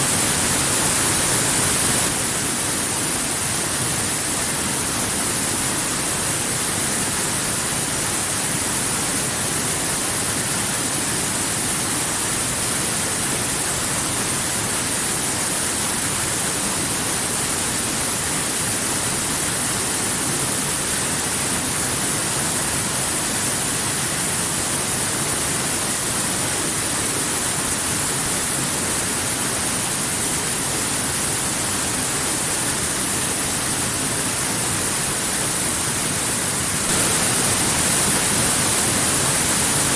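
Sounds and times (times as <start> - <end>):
waterfall rushing: 0.0 - 3.2, 29.0 - 39.9.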